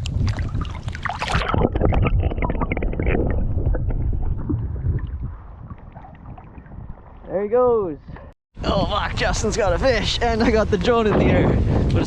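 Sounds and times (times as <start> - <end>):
water splashing and dripping: 0.0 - 7.4
wind buffeting microphone: 0.0 - 12.0.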